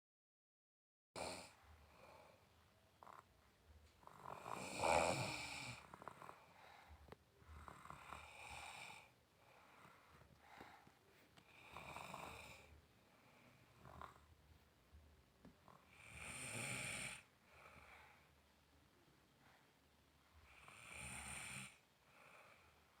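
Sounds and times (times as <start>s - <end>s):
person snoring: 1.2s - 2.1s, 4.0s - 6.5s, 7.5s - 9.1s, 11.5s - 12.7s, 15.8s - 17.3s, 20.5s - 21.8s.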